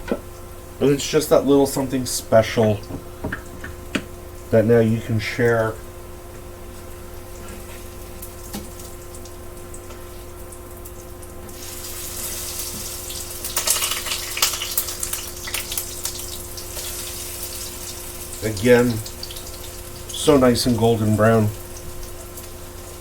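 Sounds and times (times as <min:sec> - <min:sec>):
low steady hum: 0:00.0 - 0:23.0
pancakes sizzling in hot oil: 0:07.3 - 0:23.0.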